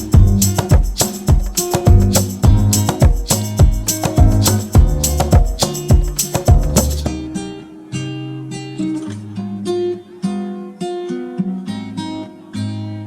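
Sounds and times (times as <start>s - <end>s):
music beat: 0.0s - 7.3s
acoustic guitar strumming: 0.0s - 13.0s.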